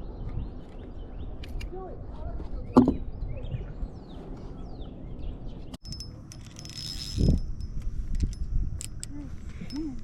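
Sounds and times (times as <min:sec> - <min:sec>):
small birds chirping: 0:00.0 - 0:06.0.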